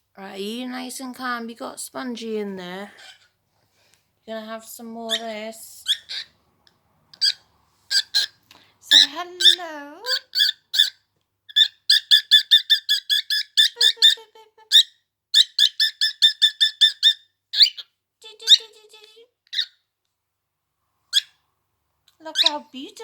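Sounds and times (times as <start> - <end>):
pet bird chirping: 5.0 - 6.4, 7.2 - 18.8, 19.5 - 19.8, 21.1 - 21.4, 22.2 - 22.8.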